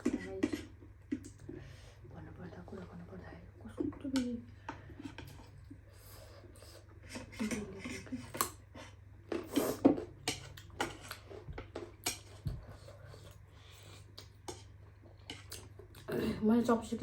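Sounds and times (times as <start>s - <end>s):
chewing and slurping noodles: 4.9s - 16.1s.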